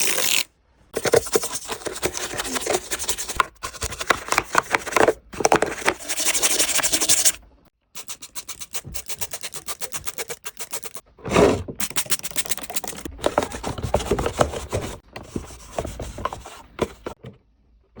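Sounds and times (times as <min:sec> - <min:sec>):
scrubbing a toy: 0:01.0 - 0:07.4, 0:08.0 - 0:11.1, 0:11.8 - 0:17.2.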